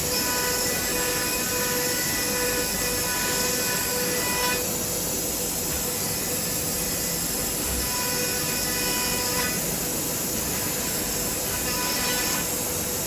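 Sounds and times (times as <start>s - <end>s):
router spindle whine: 0.0s - 4.6s, 10.3s - 13.0s.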